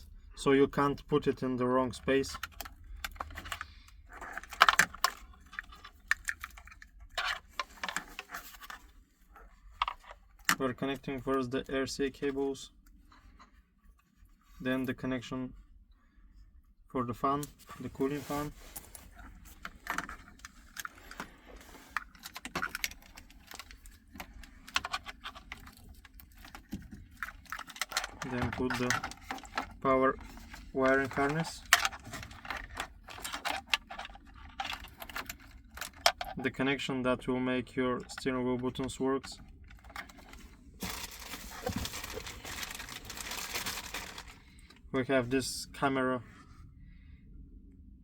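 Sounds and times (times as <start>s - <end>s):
plastic connectors clicking and rattling: 4.2s - 8.8s, 22.0s - 36.4s, 39.7s - 44.4s.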